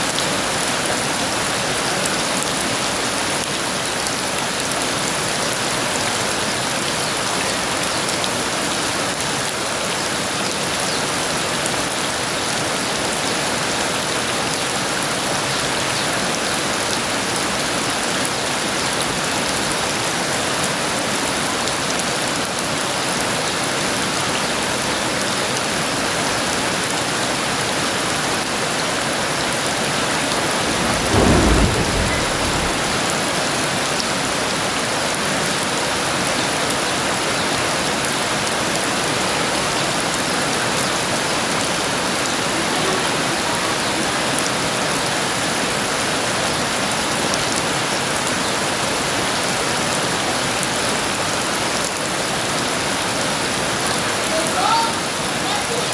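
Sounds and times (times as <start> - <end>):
heavy rain falling: 29.4 - 34.3
thunder: 30.0 - 33.8.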